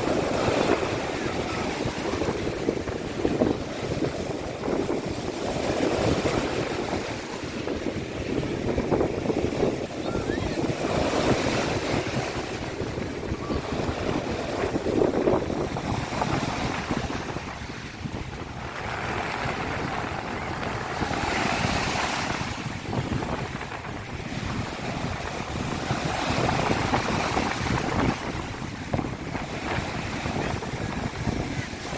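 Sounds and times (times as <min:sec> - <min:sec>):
waves washing onto beach: 0:00.0 - 0:31.9
wind buffeting microphone: 0:00.0 - 0:31.9.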